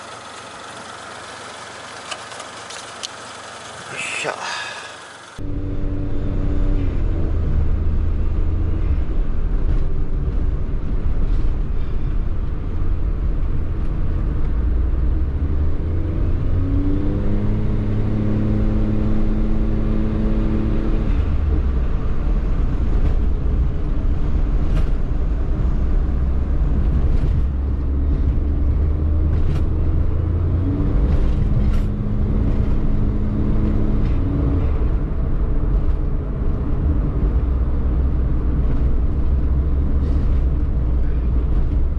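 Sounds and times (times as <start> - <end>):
car engine revving: 13.4 - 41.9.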